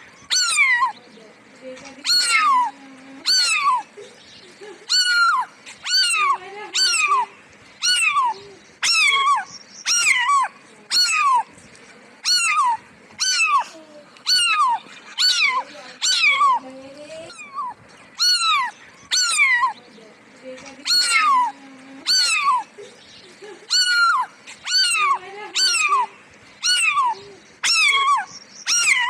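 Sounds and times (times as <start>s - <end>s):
cat meowing: 0.3s - 1.0s, 4.9s - 7.2s, 7.8s - 11.5s, 12.2s - 16.6s, 17.3s - 19.8s, 20.9s - 21.5s, 22.1s - 22.6s, 23.7s - 29.0s.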